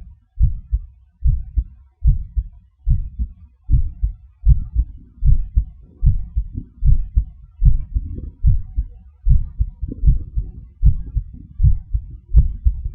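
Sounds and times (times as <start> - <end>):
heartbeat: 0.0 - 12.9.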